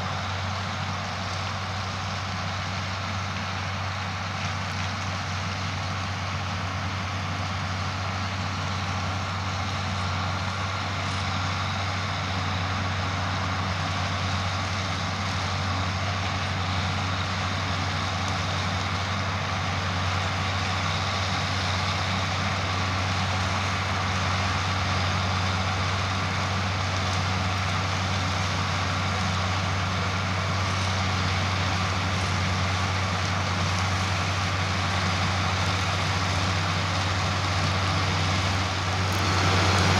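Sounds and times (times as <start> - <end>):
diesel engines running: 0.0 - 39.9.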